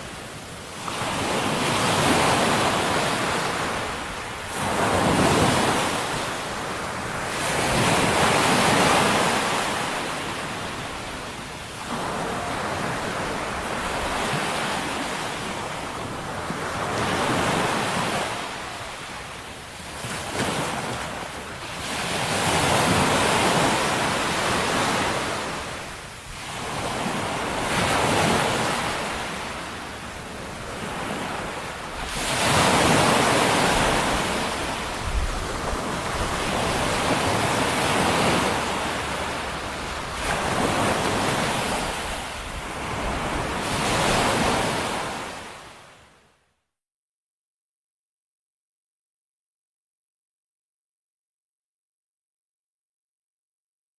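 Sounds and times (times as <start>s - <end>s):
water surging and washing back: 0.0s - 44.6s.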